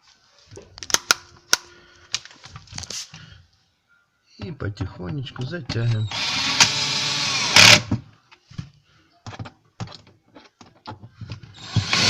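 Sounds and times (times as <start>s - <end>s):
power screwdriver driving screw: 5.9s - 8.0s, 11.6s - 12.0s.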